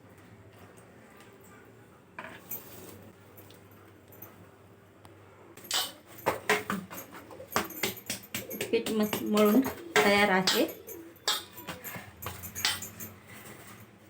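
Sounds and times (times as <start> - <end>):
light clinks: 2.3 - 4.5, 5.6 - 14.0.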